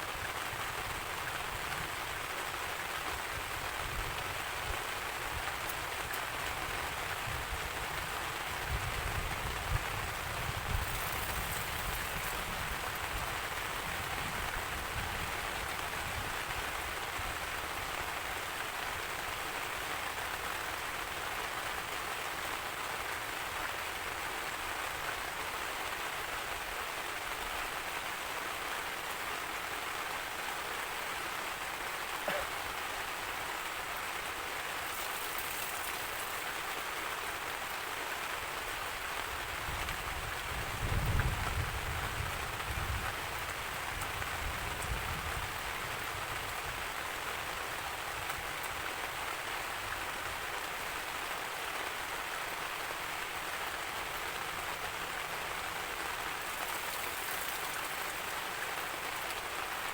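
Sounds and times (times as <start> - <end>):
heavy rain falling: 0.0 - 59.9
raindrop ticks: 34.8 - 36.8, 56.4 - 59.4.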